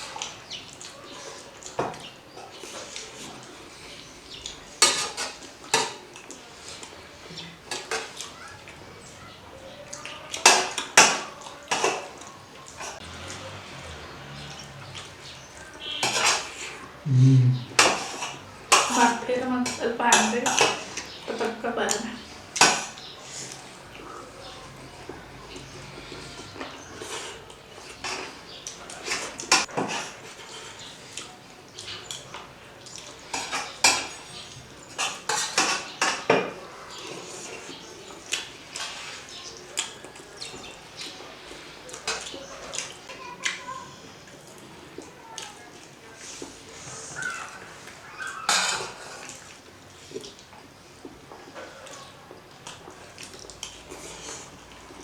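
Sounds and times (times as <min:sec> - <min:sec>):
faint eating noises: 0:00.0 - 0:55.0
cutlery clinking on plates: 0:04.4 - 0:08.4, 0:09.9 - 0:13.1, 0:15.6 - 0:16.8, 0:17.8 - 0:41.2, 0:41.9 - 0:43.8, 0:48.2 - 0:50.4
sharp scrape while eating: 0:12.8 - 0:16.9, 0:25.6 - 0:31.3, 0:37.0 - 0:39.3, 0:46.2 - 0:49.5, 0:53.8 - 0:54.6.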